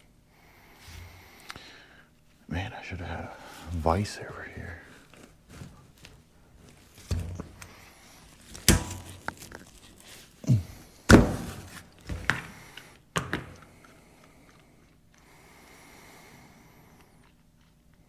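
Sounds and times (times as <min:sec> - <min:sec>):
heavy thunks and knocks on workbench: 0:11.1 - 0:12.5.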